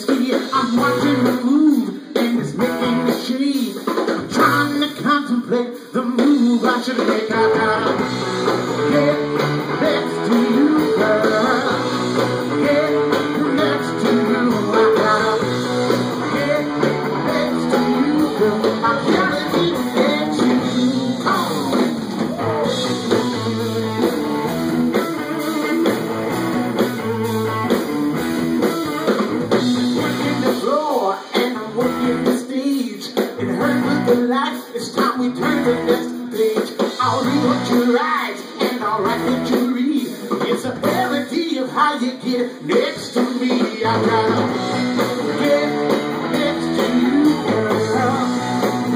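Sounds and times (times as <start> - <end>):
bass guitar: 0.0 - 3.4, 4.1 - 5.3, 7.0 - 32.5, 33.3 - 36.2, 37.0 - 38.0, 38.6 - 41.4, 43.0 - 48.9
drums: 0.0 - 48.9
electric guitar bending notes: 7.6 - 30.4.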